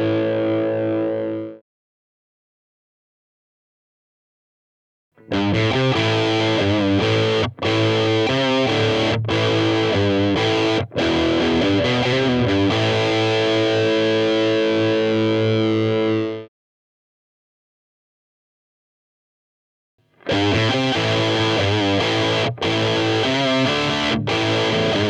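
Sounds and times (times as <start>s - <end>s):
distorted electric guitar: 0.0s - 1.6s, 5.2s - 16.5s, 20.2s - 25.0s.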